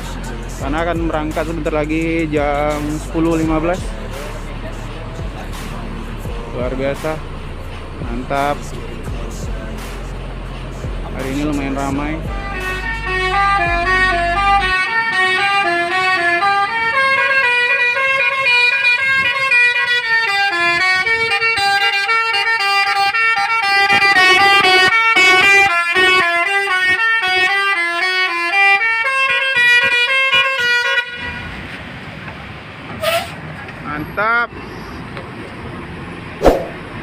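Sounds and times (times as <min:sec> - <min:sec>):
musical air horn melody: 0:11.2 - 0:31.4.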